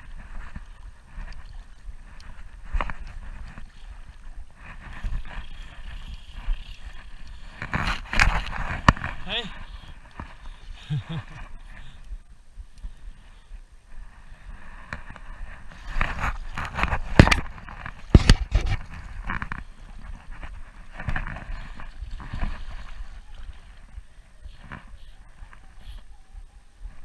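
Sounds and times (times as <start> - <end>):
water splashing and sloshing: 0.0 - 26.1.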